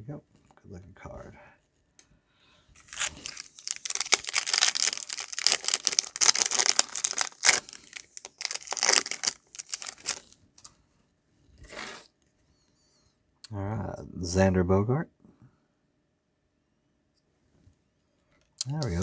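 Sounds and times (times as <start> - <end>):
foil wrapper tearing and crinkling: 2.8 - 10.4.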